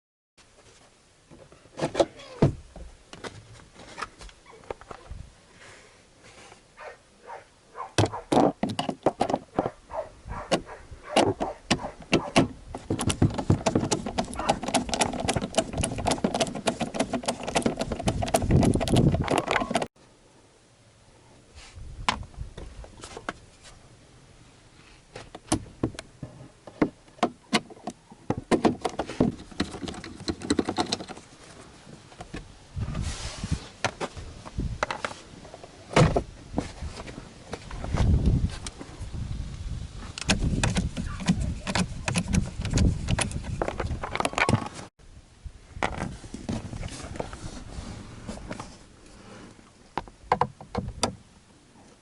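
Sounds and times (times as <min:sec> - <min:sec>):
handling noise: 0:07.8 - 0:19.9
hard plastic parts clicking: 0:11.2 - 0:19.9, 0:26.7 - 0:31.2.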